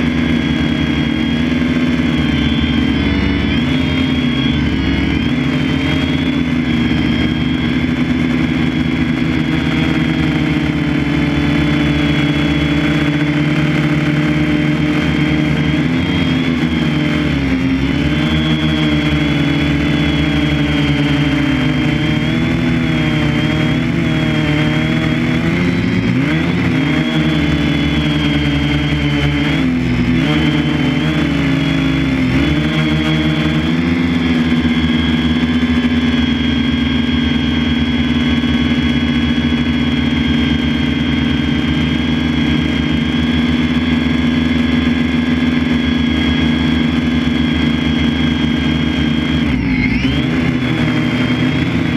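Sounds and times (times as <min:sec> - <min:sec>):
machine motor running loudly: 0:00.0 - 0:51.9.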